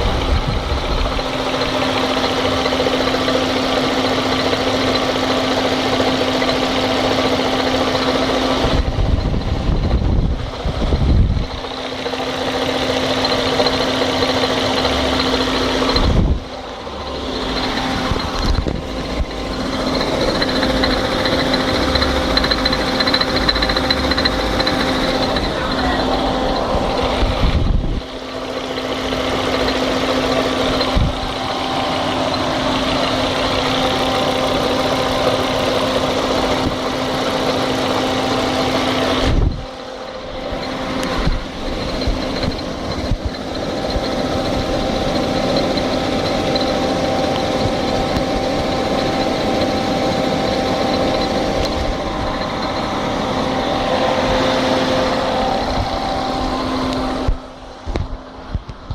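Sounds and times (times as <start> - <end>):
car engine running: 0.0 - 58.9
steady tone: 13.0 - 58.9.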